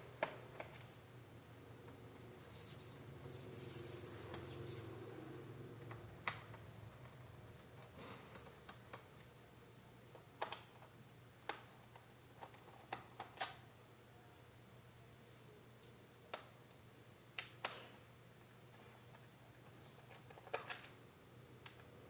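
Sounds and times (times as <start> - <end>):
plastic laptop parts clicking: 5.8 - 9.4, 10.1 - 13.6, 19.1 - 21.0.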